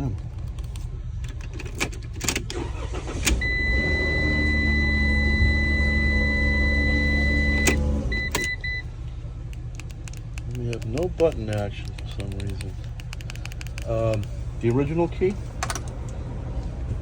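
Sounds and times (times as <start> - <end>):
van engine running: 0.0 - 17.0
ignition key clicks: 0.1 - 3.6, 7.4 - 8.8, 9.5 - 14.3, 15.6 - 16.2
short beeps: 3.4 - 8.9.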